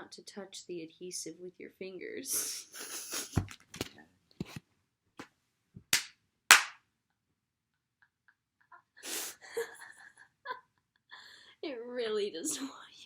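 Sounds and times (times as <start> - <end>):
sharp smacks: 5.9 - 6.8.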